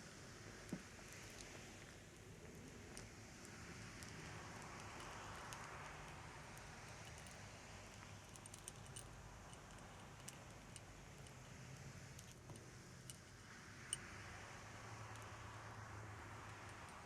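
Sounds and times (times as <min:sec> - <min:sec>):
faint clicks and crackles: 0:00.7 - 0:14.1.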